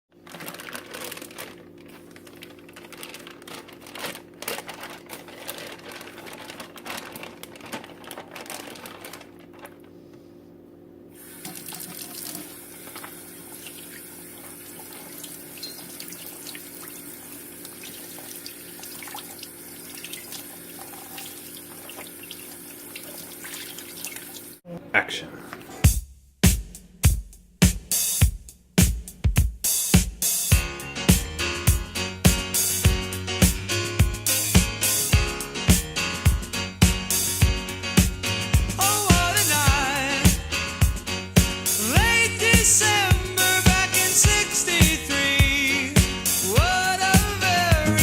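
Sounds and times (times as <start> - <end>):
water running from tap into sink: 11.2 - 24.6.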